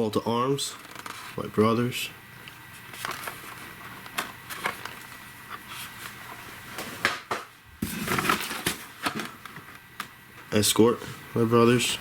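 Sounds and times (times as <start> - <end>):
packages rustling: 0.7 - 1.5, 2.6 - 6.9, 7.8 - 9.9.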